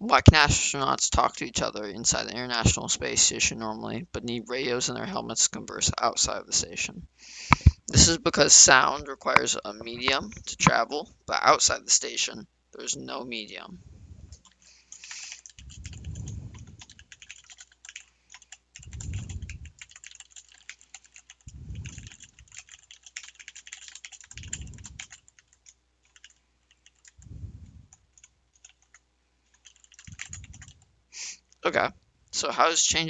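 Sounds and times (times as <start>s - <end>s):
stylus tapping on tablet screen: 7.5s - 8.1s.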